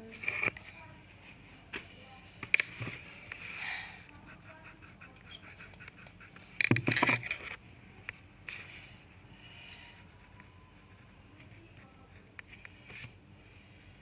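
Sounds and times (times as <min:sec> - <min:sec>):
drawing strokes scratching: 0:03.4 - 0:06.6.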